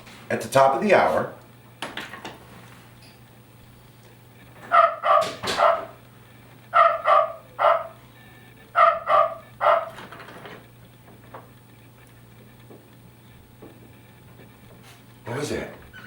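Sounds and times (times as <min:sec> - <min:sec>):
cuckoo clock recorded barking: 0:04.6 - 0:06.1, 0:06.7 - 0:10.6.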